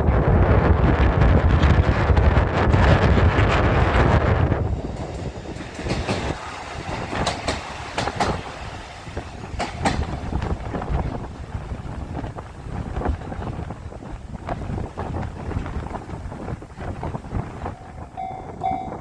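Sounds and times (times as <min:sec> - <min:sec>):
train wheels clacking on rail joints: 0:04.8 - 0:19.0.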